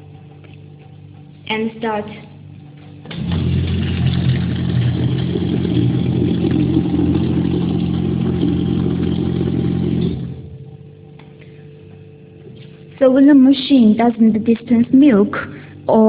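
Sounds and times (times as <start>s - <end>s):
pump motor humming: 2.9s - 12.8s.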